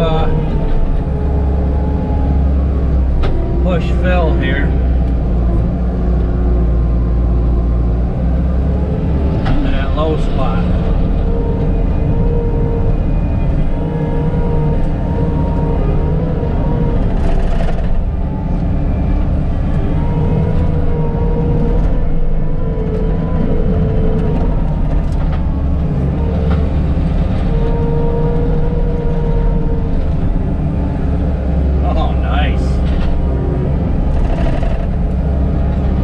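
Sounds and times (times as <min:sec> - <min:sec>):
diesel engine with whine: 0:00.0 - 0:36.0.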